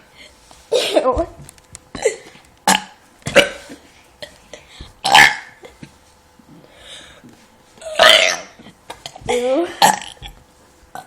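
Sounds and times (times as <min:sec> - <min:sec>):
person burping: 0:02.0 - 0:03.8, 0:05.0 - 0:05.9, 0:07.8 - 0:08.6, 0:09.3 - 0:10.4.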